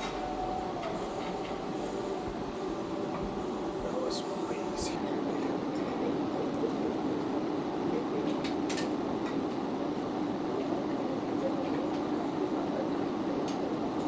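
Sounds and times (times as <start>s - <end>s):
low rumbling background noise: 0.0s - 14.0s.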